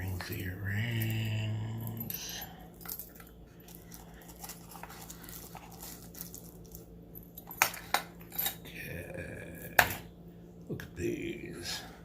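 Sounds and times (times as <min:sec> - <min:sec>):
low steady hum: 0:00.0 - 0:12.0
light rustles of packaging: 0:02.8 - 0:07.9.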